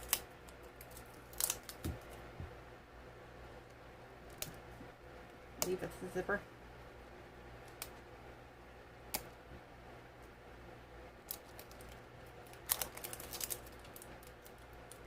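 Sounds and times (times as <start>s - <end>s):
toy packaging clicks: 0.0s - 1.9s, 11.2s - 15.0s
packaging crinkling and snapping: 0.0s - 2.2s, 11.2s - 15.0s.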